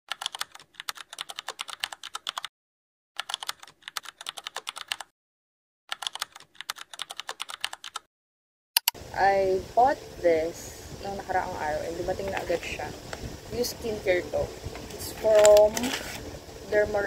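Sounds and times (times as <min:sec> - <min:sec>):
computer keyboard typing: 0:00.1 - 0:02.5, 0:03.2 - 0:05.1, 0:05.9 - 0:08.1.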